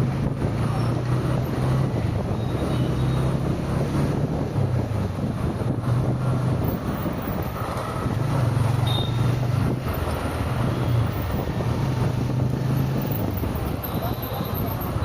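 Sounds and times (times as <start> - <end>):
car engine and tyre hum: 0.0 - 15.0.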